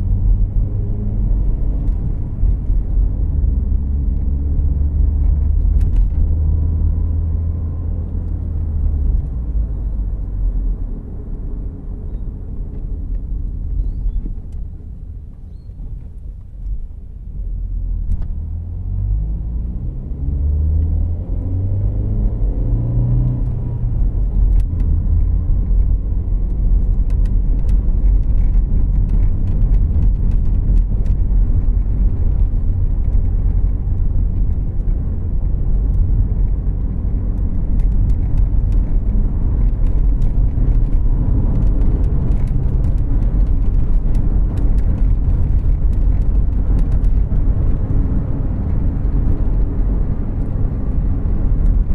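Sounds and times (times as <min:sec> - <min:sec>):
engine and road rumble: 0:00.0 - 0:51.9
car engine accelerating: 0:17.5 - 0:51.9.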